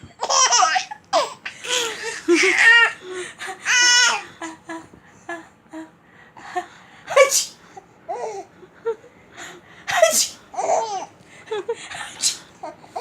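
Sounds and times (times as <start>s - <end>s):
baby laughing: 0.2s - 3.0s, 9.9s - 11.1s, 12.6s - 13.0s
woman fake sneezing: 7.1s - 7.6s, 9.9s - 10.4s, 12.1s - 12.5s.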